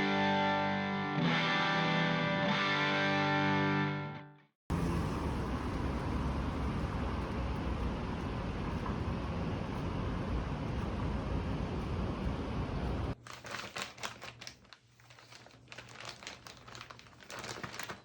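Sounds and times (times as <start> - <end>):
steady rushing noise: 4.7 - 13.2
packaging crinkling and rustling: 13.2 - 18.0.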